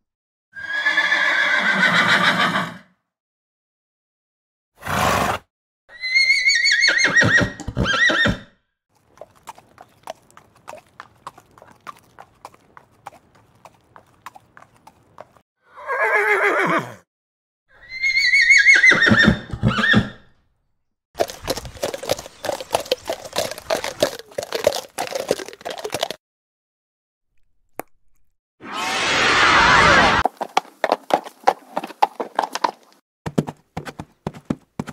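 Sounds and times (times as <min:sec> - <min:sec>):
horses whinnying: 0:00.6 - 0:02.8, 0:04.8 - 0:08.5, 0:09.1 - 0:17.0, 0:17.7 - 0:20.2, 0:21.2 - 0:26.2
horse hooves clip-clopping: 0:09.0 - 0:15.4, 0:21.2 - 0:26.2, 0:30.2 - 0:34.9.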